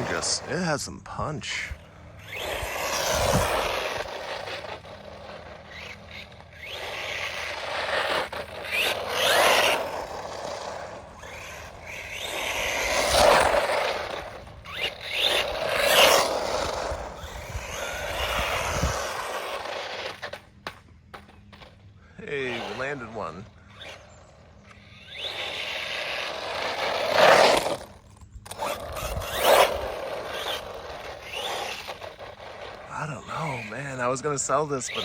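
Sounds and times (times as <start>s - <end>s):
rc car tyres scraping: 0.0s - 35.0s.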